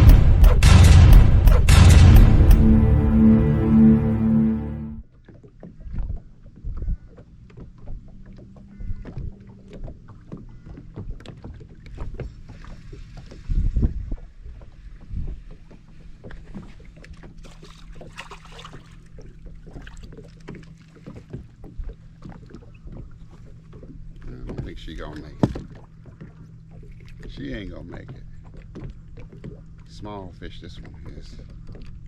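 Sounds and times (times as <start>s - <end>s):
heavy thump: 0.0s - 5.0s
steady low hum: 0.0s - 5.0s.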